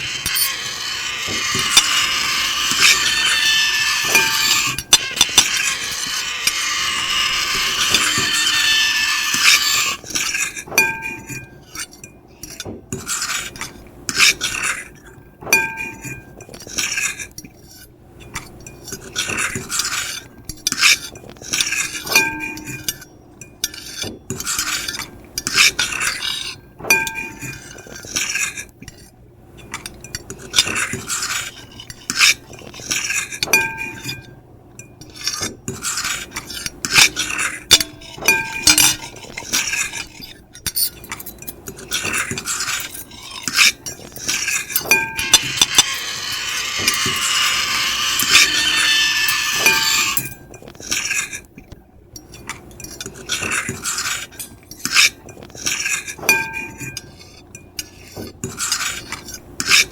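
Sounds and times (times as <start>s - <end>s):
fork and knife scraping plate: 0.0s - 29.1s, 29.7s - 51.5s, 52.2s - 59.9s
cutlery clinks: 10.7s - 12.7s, 21.8s - 24.1s, 33.4s - 35.2s, 36.9s - 39.2s, 39.9s - 46.1s, 48.2s - 50.7s, 56.2s - 57.7s.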